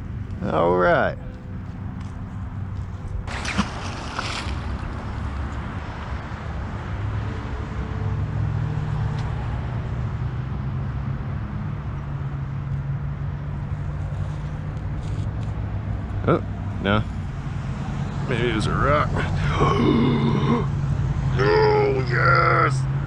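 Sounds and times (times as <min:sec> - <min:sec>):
water splashing: 0:03.3 - 0:06.0.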